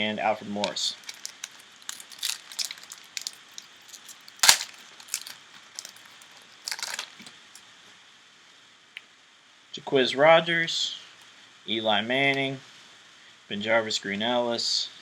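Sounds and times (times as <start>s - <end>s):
wrapper crinkling: 0.6s - 7.6s.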